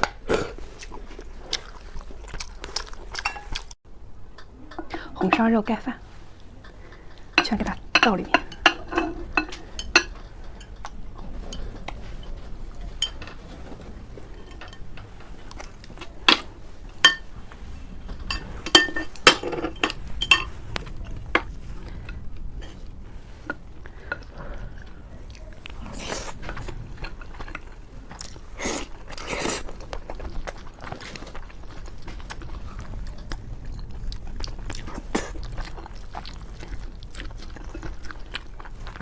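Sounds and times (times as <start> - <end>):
utensils clinking against a dish: 3.2 - 3.6, 6.6 - 22.8.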